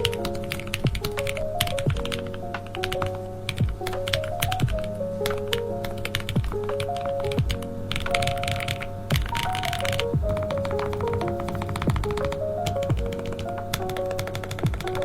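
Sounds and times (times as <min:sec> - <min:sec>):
background music with steady beat: 0:00.0 - 0:15.0
mechanical keyboard keystroke clacks: 0:07.9 - 0:15.0.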